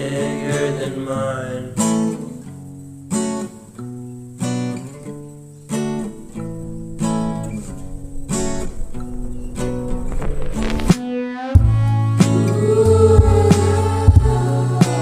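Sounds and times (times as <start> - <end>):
acoustic guitar strumming chords: 0.0 - 15.0.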